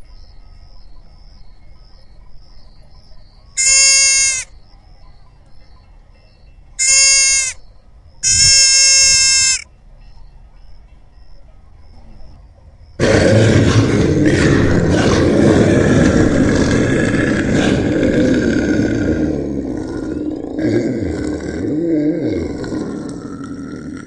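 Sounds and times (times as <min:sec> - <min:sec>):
faint high chirping: 0:00.0 - 0:13.0
animal bleating: 0:03.6 - 0:04.5, 0:06.8 - 0:07.6, 0:08.2 - 0:09.6
loud rough noise: 0:13.0 - 0:21.9.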